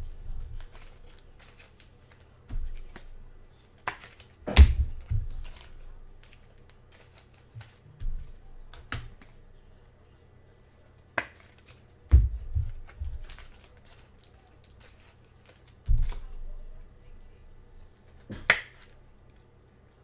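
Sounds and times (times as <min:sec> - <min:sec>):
trading cards clicking and rustling: 0:00.4 - 0:07.8, 0:11.2 - 0:16.4.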